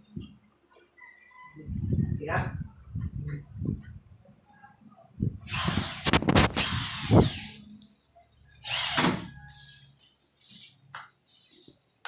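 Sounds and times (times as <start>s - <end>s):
power tool working wood: 8.6s - 9.3s.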